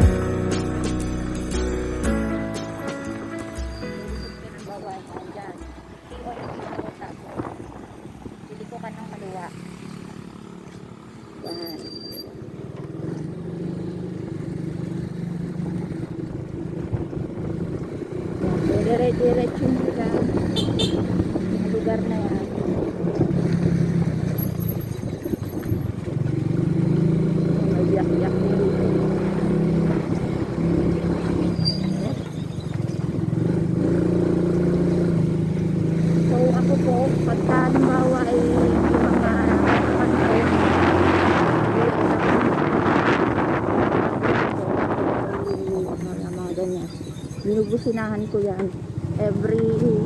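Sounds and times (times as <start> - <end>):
vehicle engine running: 0.0 - 47.0
thin high tone: 0.1 - 6.9.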